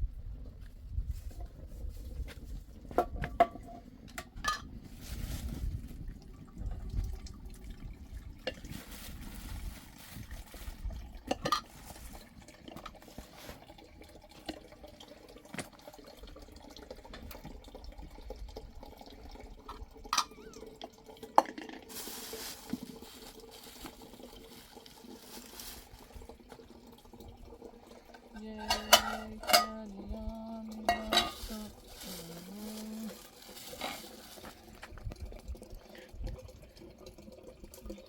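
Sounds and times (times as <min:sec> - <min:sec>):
water splashing and trickling: 0:00.9 - 0:38.0
pots and utensils clinking: 0:03.0 - 0:05.2, 0:11.2 - 0:13.2, 0:19.7 - 0:20.6, 0:28.0 - 0:30.1, 0:30.8 - 0:34.6.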